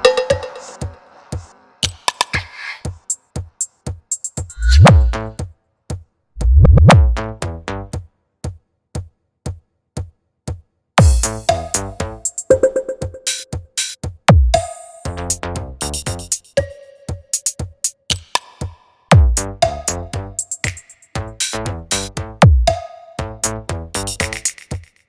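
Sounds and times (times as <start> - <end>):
electronic dance music: 0.0 - 3.2, 4.2 - 5.5, 6.8 - 8.0, 11.0 - 14.0, 14.6 - 16.8, 19.1 - 24.9.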